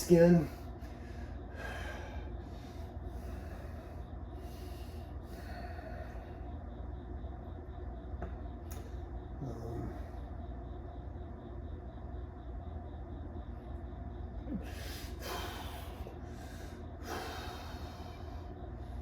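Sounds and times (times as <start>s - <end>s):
steady low hum: 0.0s - 19.0s
man breathing heavily: 0.5s - 6.9s, 14.4s - 19.0s.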